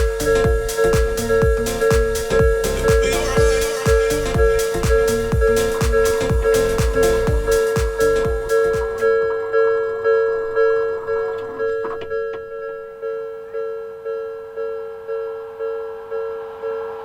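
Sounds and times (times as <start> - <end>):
level-crossing warning bell ringing: 2.4 - 7.8.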